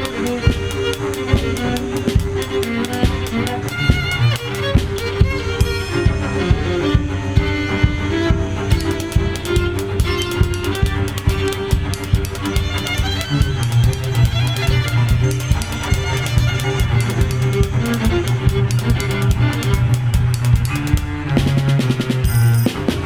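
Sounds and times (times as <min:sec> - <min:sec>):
bowed violin: 0:00.0 - 0:23.0
rapid clicks and taps: 0:00.0 - 0:23.0.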